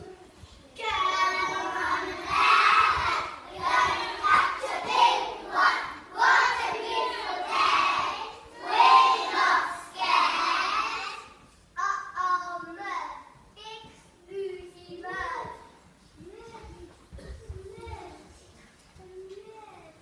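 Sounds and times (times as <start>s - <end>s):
children chanting in unison: 0.8s - 11.4s.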